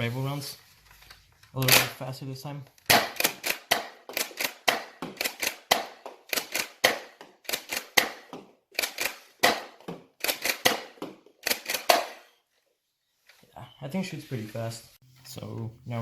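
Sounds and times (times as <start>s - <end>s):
toy blaster shots popping: 2.9s - 12.3s.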